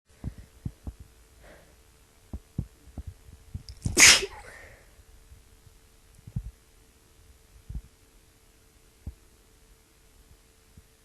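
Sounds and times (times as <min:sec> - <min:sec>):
soft low thumps: 0:00.1 - 0:01.2, 0:02.2 - 0:04.0, 0:05.2 - 0:06.6, 0:07.5 - 0:08.0
faint intake of breath: 0:01.4 - 0:01.8
woman sneezing loudly: 0:03.9 - 0:04.7.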